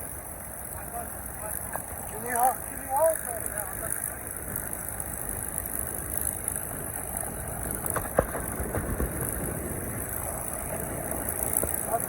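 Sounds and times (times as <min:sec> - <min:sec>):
aircraft engines rumbling: 0:00.0 - 0:12.0.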